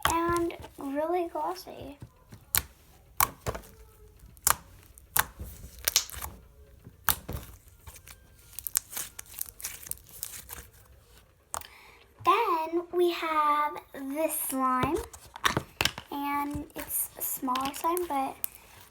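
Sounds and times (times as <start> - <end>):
slime squished by hand: 2.0 - 11.7.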